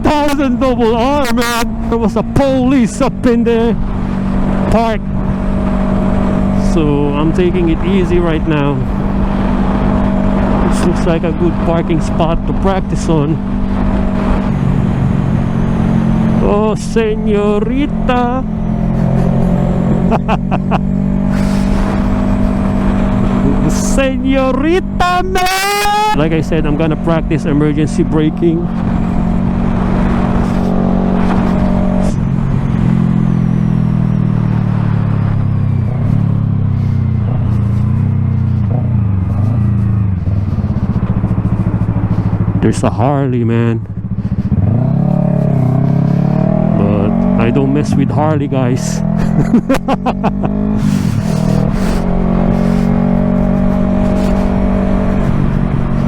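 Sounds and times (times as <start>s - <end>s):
wind noise rush: 0.0s - 16.4s, 17.3s - 27.6s, 28.2s - 42.8s, 49.0s - 56.0s
motorcycle engine running: 0.0s - 56.0s
motorcycle engine idling: 35.8s - 46.6s.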